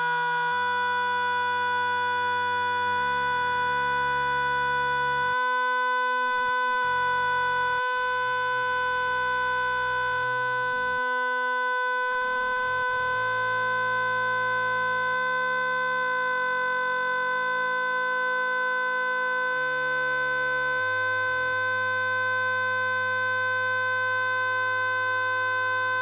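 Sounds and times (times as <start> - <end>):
loud steady electronic tone: 0.0 - 26.0.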